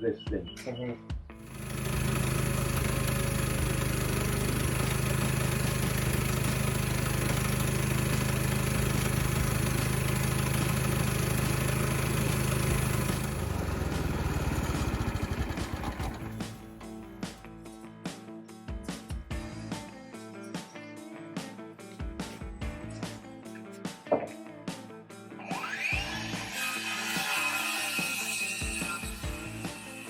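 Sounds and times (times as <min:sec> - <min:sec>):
motor running and winding down: 0:01.4 - 0:16.8, 0:25.4 - 0:30.0.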